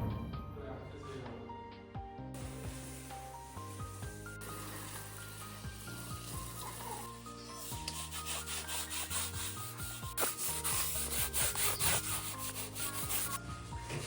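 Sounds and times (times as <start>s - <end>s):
soft background music: 0.0s - 14.0s
scraping strokes on wood: 3.9s - 14.0s.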